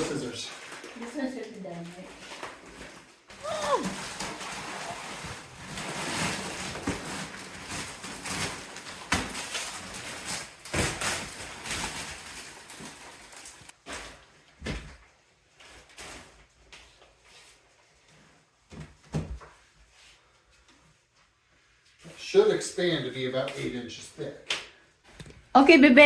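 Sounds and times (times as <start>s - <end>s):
plastic wrapping crinkling: 0.0s - 14.5s.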